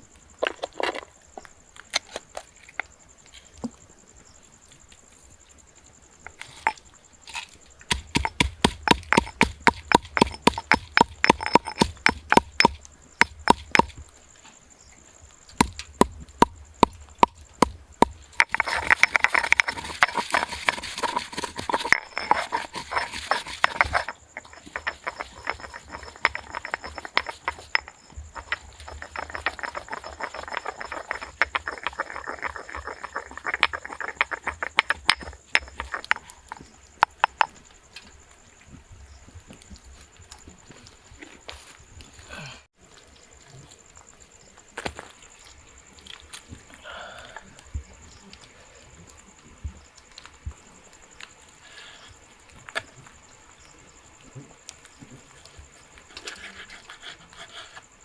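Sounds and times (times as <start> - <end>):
rustling scraping noise: 6.3 - 12.8, 18.2 - 37.5, 55.1 - 58.0
rapid knocks on hard surface: 7.9 - 13.9.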